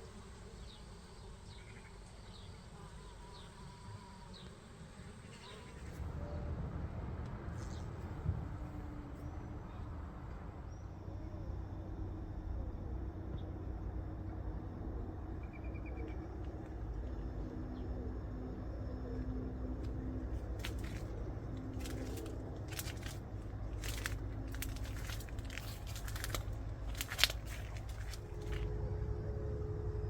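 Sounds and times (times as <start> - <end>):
steady low rumble: 5.8 - 30.0
sharp clicks and crackles: 20.6 - 28.7.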